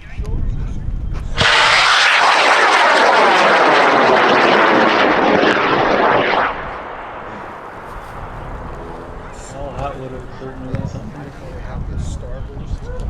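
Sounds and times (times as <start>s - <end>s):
rocket motor roaring: 1.2s - 11.5s.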